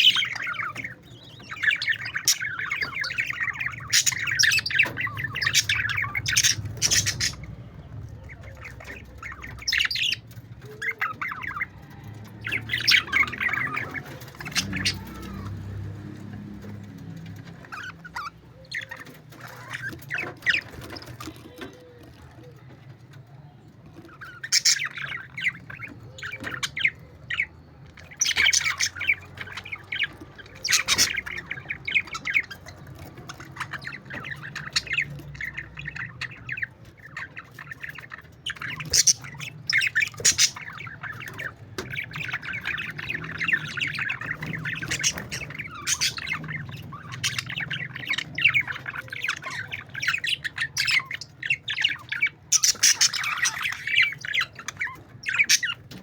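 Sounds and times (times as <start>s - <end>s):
loud bird squawks: 0.0s - 11.8s, 12.5s - 15.8s, 28.0s - 56.0s
budgerigars chattering: 0.0s - 22.7s, 23.9s - 56.0s.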